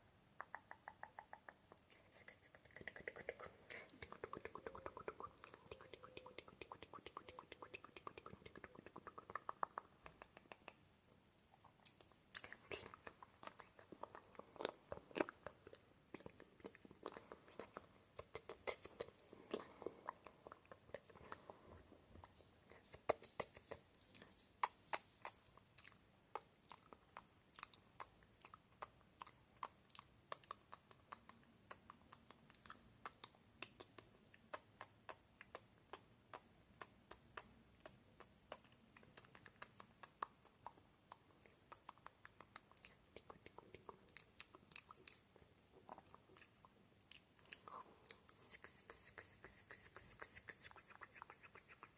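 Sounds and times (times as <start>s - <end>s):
tongue clicks: 0.4s - 10.9s, 11.5s - 21.5s, 22.2s - 51.9s
lip smacks: 0.4s - 51.9s.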